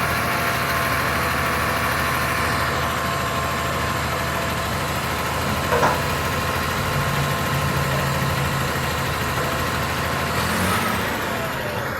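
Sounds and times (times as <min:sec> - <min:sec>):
bulldozer diesel engine idling: 0:00.0 - 0:11.9.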